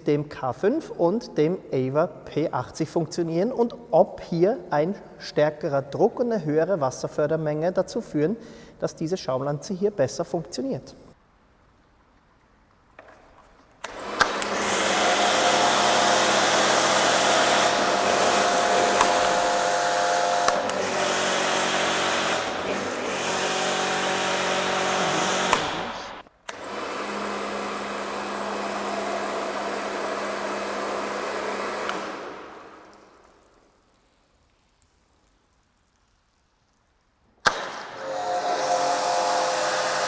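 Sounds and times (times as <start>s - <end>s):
pressure washer motor hum: 13.8s - 33.5s, 37.4s - 40.0s
hiss of water spray: 14.2s - 26.2s.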